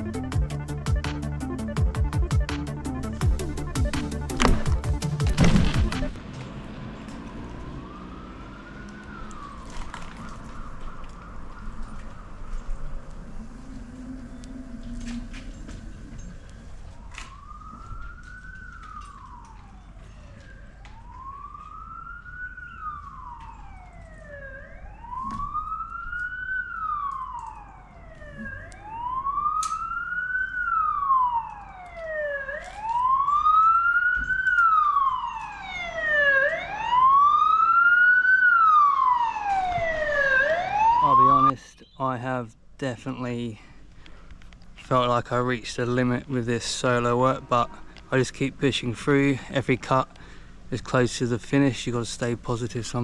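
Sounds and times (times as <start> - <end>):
emergency siren wailing: 0.0 - 41.6.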